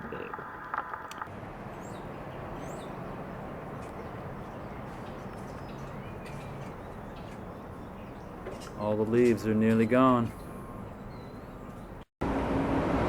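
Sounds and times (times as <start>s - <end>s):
outdoor background rumble: 0.0s - 13.0s
high bird chirps: 1.7s - 8.8s, 10.3s - 12.0s.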